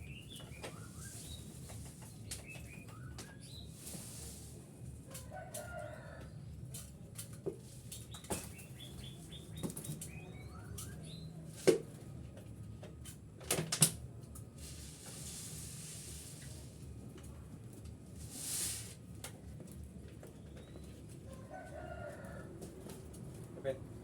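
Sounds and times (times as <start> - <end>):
small birds chirping: 7.9 - 11.5.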